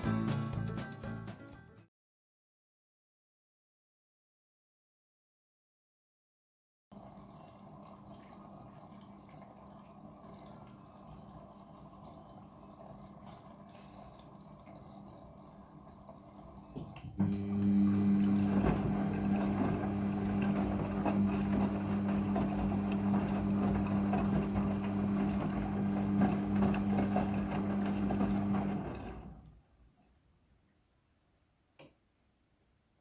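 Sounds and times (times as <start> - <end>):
washing machine running: 6.9 - 29.5.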